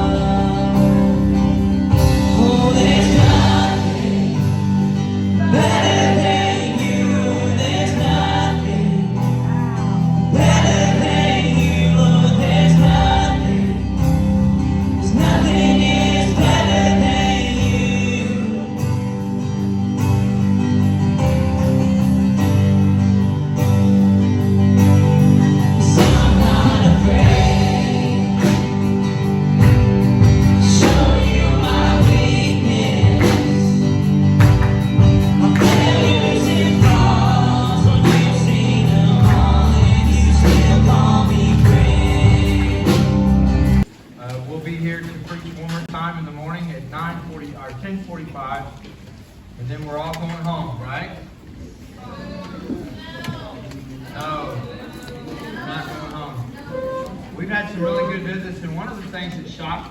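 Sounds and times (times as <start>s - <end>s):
worship music with singing: 0.0s - 46.6s.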